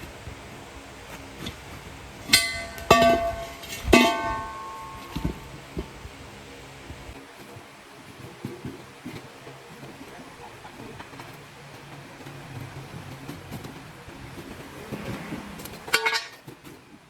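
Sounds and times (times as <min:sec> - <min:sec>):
hammer striking metal: 0:02.3 - 0:05.9.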